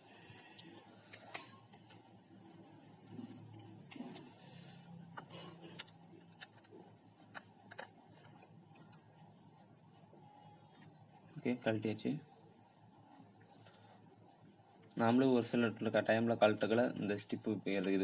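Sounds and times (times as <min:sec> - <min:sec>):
cracked glass clicking and snapping: 0:00.4 - 0:02.0, 0:05.0 - 0:08.0.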